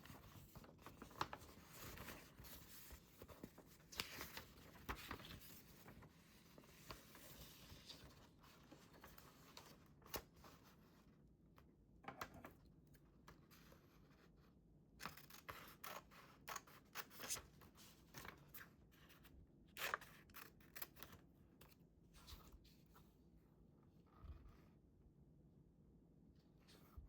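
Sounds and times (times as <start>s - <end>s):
paper rustling: 0.0s - 10.6s.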